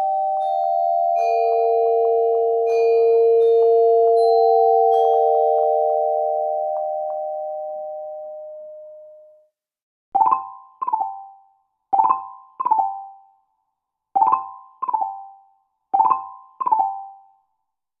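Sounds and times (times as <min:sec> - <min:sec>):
two-note electronic chime: 0:00.0 - 0:09.4.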